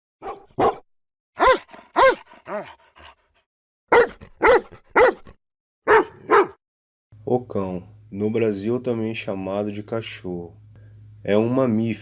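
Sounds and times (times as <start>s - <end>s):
dog barking: 0.2s - 0.8s, 1.4s - 3.1s, 3.9s - 6.6s.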